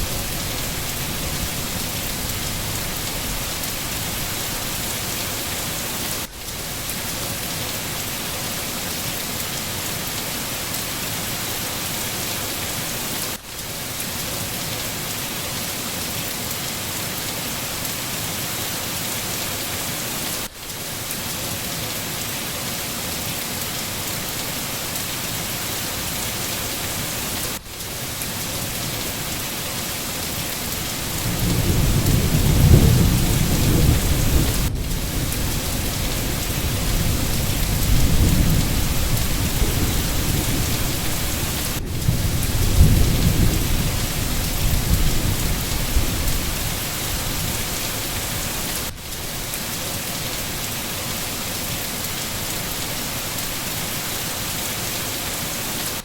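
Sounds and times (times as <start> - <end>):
heavy rain on foliage: 0.0 - 56.0
thunder rumbling: 30.7 - 48.9.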